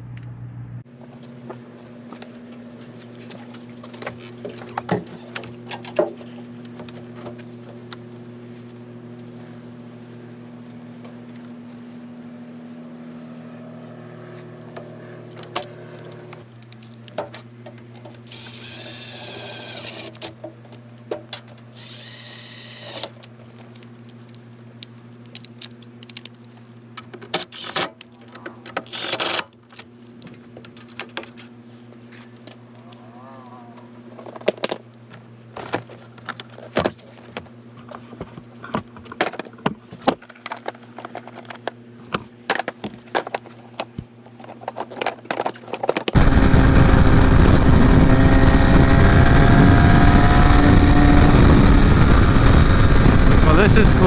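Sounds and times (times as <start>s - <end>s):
low hum: 0.0s - 17.0s, 46.2s - 54.0s.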